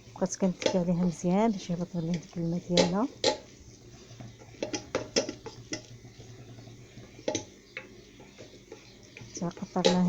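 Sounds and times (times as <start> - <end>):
faint low hum: 0.0 - 10.0.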